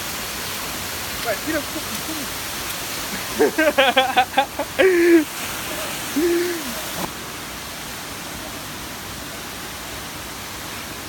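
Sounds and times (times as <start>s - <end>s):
waterfall rushing into pool: 0.0s - 11.0s
short vocal exclamation: 6.2s - 7.1s.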